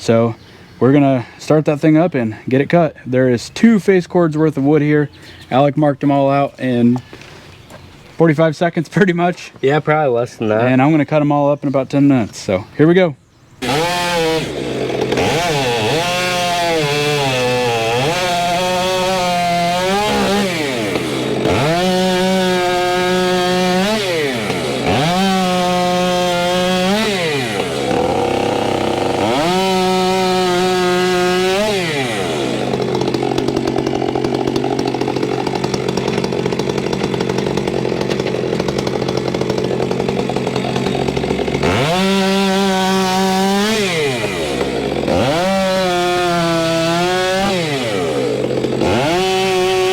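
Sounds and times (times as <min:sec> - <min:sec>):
chainsaw revving and cutting logs: 0:13.6 - 0:49.9.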